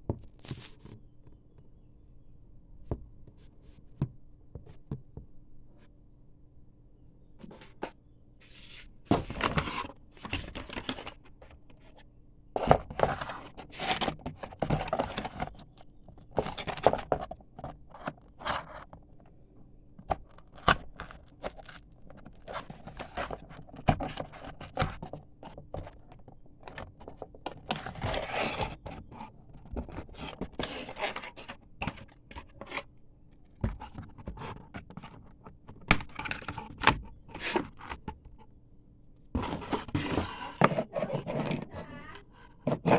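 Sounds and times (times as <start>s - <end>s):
packaging scraped and torn: 20.2s - 24.7s.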